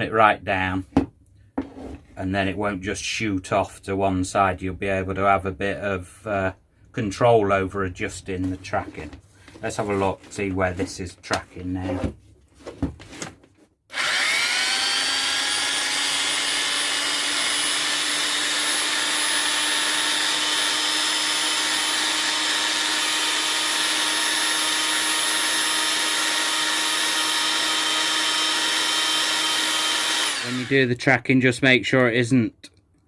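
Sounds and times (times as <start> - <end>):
belt sander motor whine: 13.9 - 30.8.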